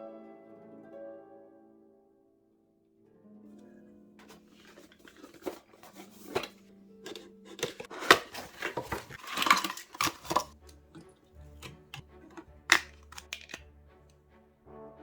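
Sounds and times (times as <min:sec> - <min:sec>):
quiet background music: 0:00.0 - 0:15.0
computer parts clicking and knocking: 0:11.7 - 0:13.6.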